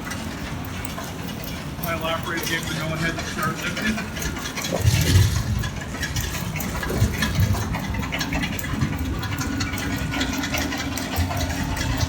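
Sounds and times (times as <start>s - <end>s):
conveyor hum: 0.0s - 12.0s
rattling and clicking machinery: 0.0s - 12.0s
engine drone: 3.0s - 12.0s.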